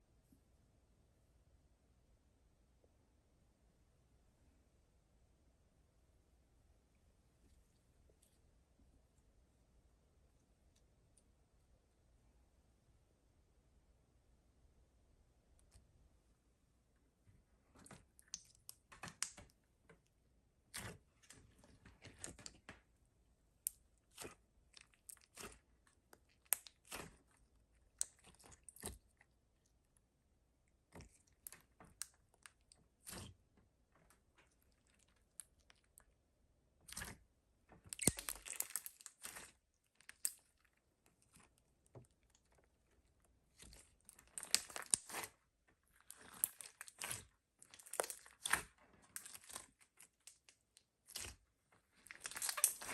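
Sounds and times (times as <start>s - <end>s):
slime crackling and popping: 23.6s - 29.2s, 37.8s - 40.6s, 43.5s - 52.9s.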